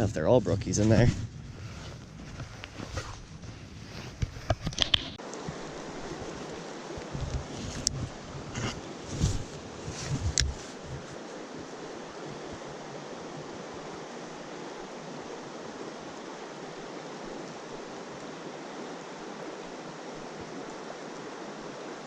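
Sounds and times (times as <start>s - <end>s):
creek water rushing: 5.2s - 22.0s.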